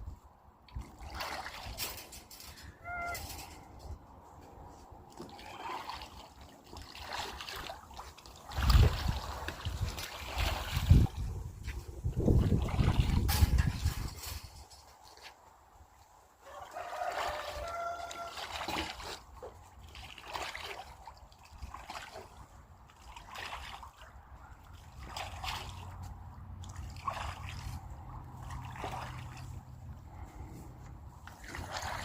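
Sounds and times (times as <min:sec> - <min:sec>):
birds splashing in water: 0:00.7 - 0:03.6, 0:05.0 - 0:11.2, 0:16.5 - 0:32.0.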